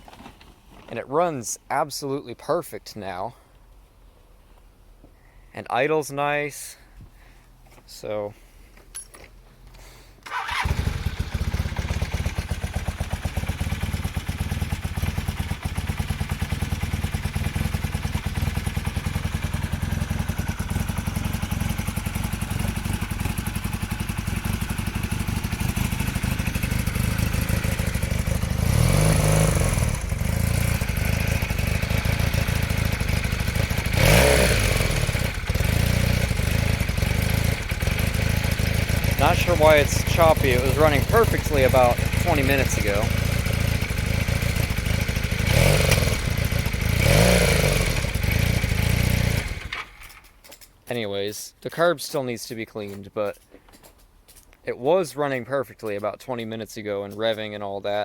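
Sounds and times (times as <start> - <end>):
motorcycle engine choppy idle: 10.3 - 50.2
motorcycle engine revving: 10.3 - 50.2.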